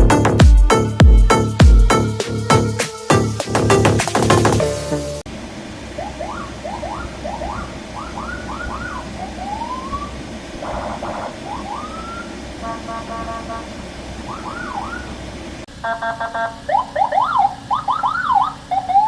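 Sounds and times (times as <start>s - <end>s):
electronic vehicle siren: 5.8s - 19.0s.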